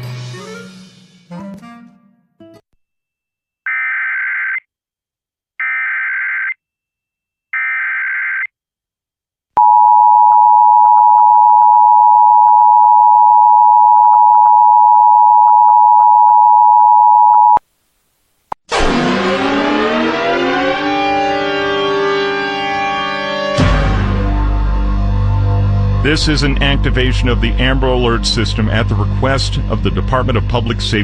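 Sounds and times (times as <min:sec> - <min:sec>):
two-tone alarm: 0:09.6 - 0:17.6, 0:18.8 - 0:24.2
siren: 0:18.7 - 0:25.6.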